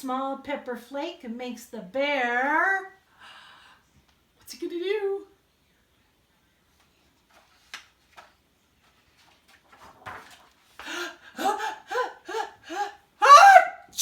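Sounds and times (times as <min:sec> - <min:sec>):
woman's pitched ah gasps: 0:10.8 - 0:13.4.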